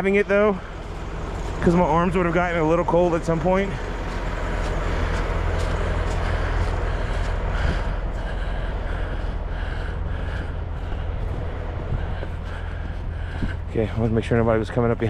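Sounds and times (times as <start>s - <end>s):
passing traffic rumble: 0.0s - 15.0s
faint footsteps: 0.6s - 15.0s
wind on microphone: 6.7s - 14.3s.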